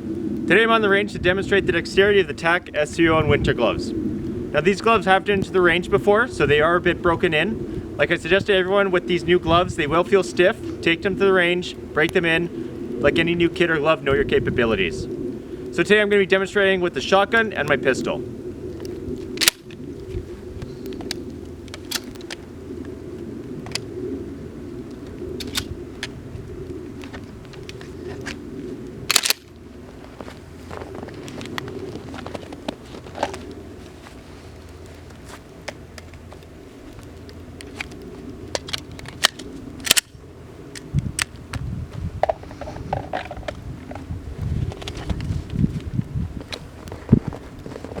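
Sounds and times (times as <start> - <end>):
steady low hum: 0.0 - 48.0
firearm clicks and clacks: 19.4 - 19.8, 21.0 - 22.4, 25.4 - 26.2, 29.1 - 29.5, 37.2 - 40.1.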